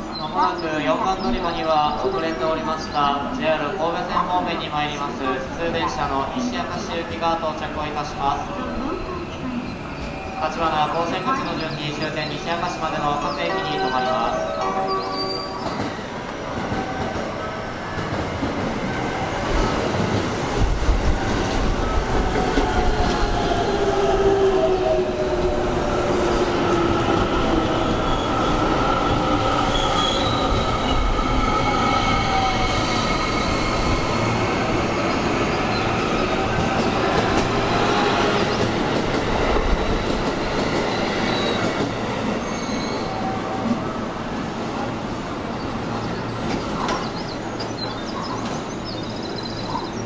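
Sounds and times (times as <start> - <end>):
train wheels squealing: 26.6 - 38.8, 40.4 - 43.9.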